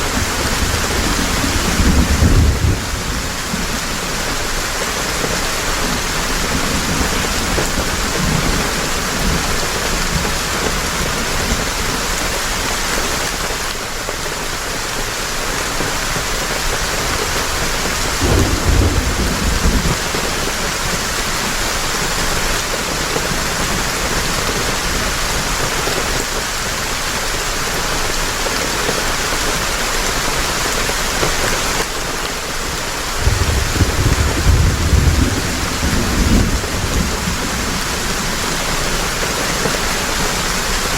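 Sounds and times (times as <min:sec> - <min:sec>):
thunder rumbling: 0:00.0 - 0:11.7, 0:17.0 - 0:21.2, 0:33.1 - 0:40.9
heavy rain: 0:00.0 - 0:40.9.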